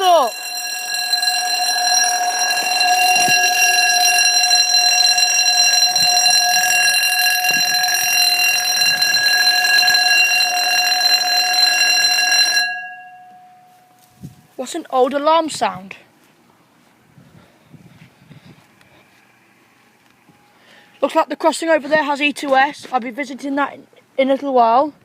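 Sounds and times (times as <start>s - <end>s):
level crossing alarm tone: 0.0s - 14.2s.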